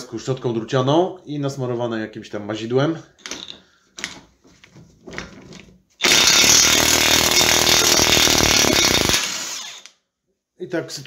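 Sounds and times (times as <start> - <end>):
power tool running: 6.0 - 9.9.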